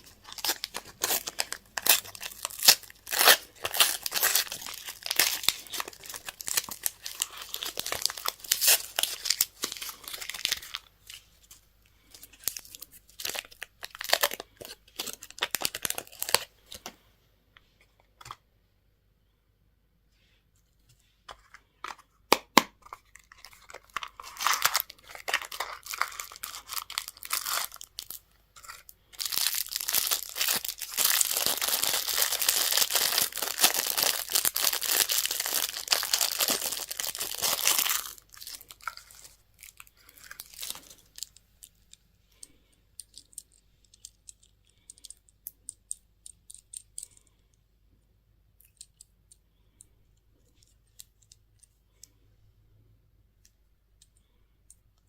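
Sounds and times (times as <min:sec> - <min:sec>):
candy wrapper crinkling: 0:00.0 - 0:16.9, 0:22.5 - 0:47.2.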